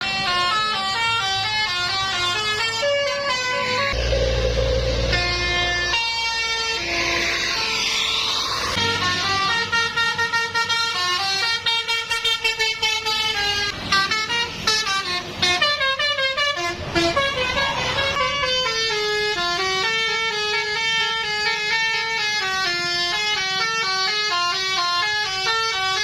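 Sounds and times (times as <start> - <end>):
multi-tone bus horn tune: 0.0 - 26.0
short noisy rush: 4.0 - 8.8.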